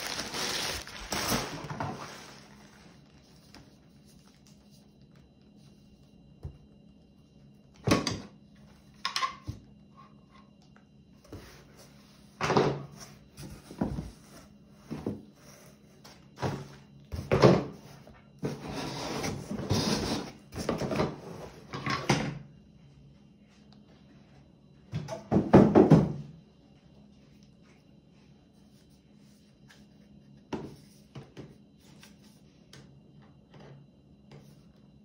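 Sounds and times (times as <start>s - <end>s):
packaging rustling and clattering: 0.0s - 3.7s.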